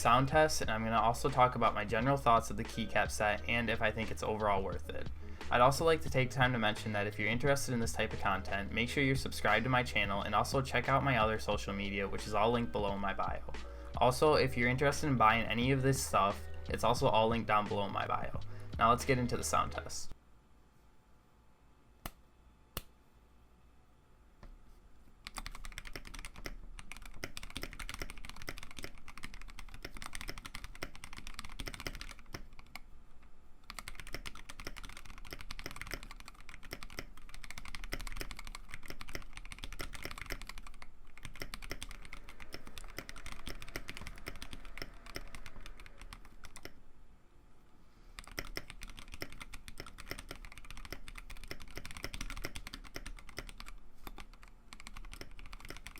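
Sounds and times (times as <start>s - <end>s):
mechanical keyboard typing: 25.3s - 32.8s, 33.7s - 46.8s, 48.2s - 55.9s.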